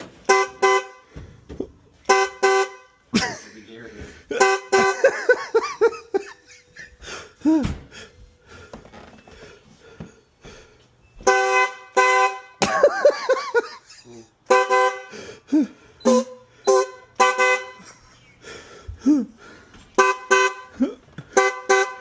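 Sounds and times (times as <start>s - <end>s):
breathless laughter: 3.1s - 8.2s, 12.7s - 14.4s, 15.2s - 16.1s, 17.8s - 19.7s, 20.7s - 21.2s.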